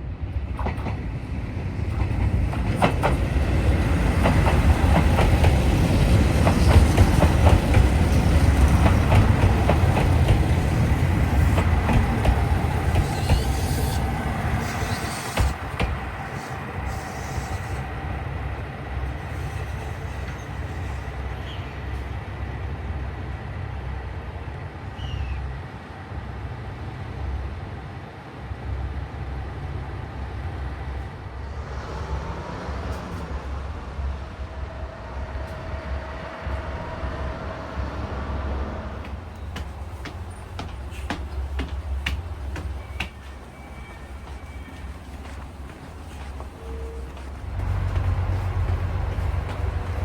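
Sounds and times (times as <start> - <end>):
diesel train rumble: 0.0 - 24.4, 28.8 - 50.0
faint squealing tones: 42.8 - 45.4.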